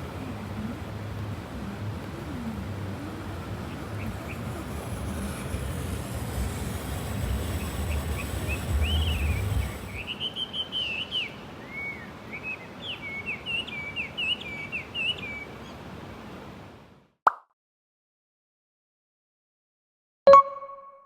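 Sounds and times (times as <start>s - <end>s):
songbird warbling: 7.2s - 15.4s.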